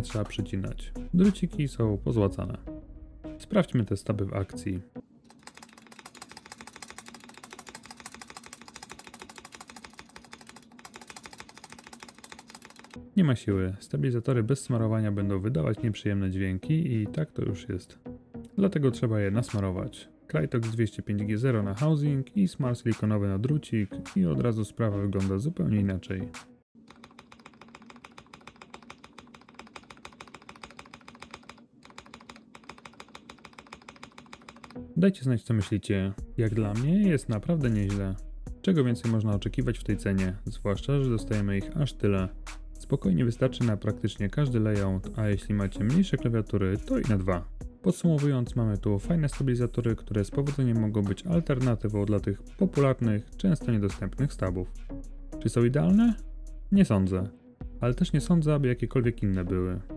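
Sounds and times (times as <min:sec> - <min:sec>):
mechanical keyboard key clatter: 0:05.3 - 0:13.0, 0:26.9 - 0:34.8.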